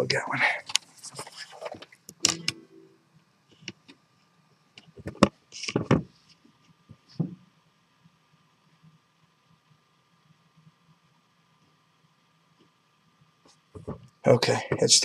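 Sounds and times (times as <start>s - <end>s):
thump: 7.2s - 7.4s.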